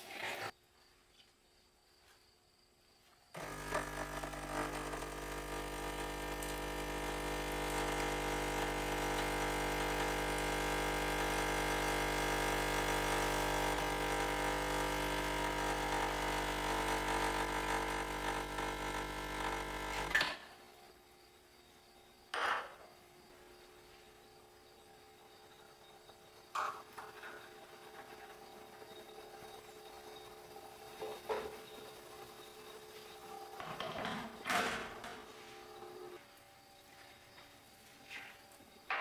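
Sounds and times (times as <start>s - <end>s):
small appliance motor humming: 3.4s - 20.9s, 24.5s - 34.5s.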